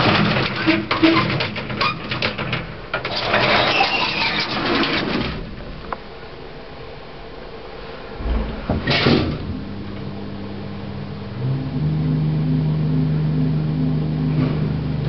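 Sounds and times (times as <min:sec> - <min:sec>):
lift clicks and knocks: 0:00.0 - 0:03.5
lift steady hum: 0:04.4 - 0:15.0
lift rushing with gliding whine: 0:05.5 - 0:15.0.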